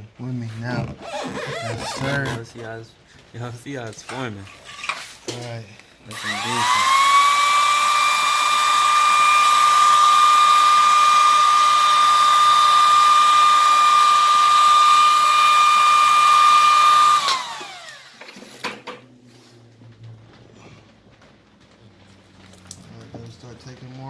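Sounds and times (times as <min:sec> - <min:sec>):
heat gun motor whine: 0:06.1 - 0:18.6.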